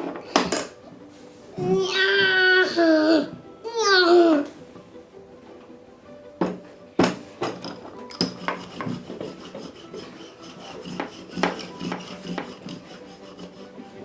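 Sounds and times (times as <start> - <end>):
plastic roller rubbing on tabletop: 7.3 - 14.0.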